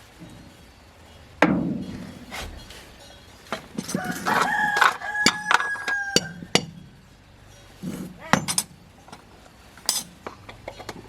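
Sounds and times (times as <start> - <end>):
sharp clicks and clinks: 3.0 - 6.8, 7.5 - 9.2, 9.8 - 11.0
rooster crowing: 3.8 - 6.7.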